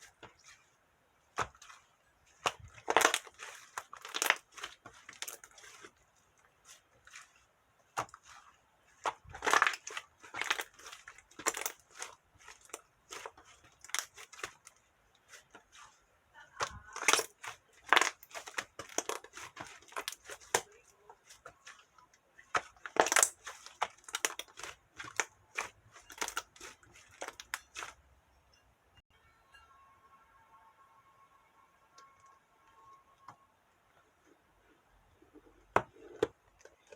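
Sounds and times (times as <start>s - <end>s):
sticky slime squishes: 0.0s - 28.0s.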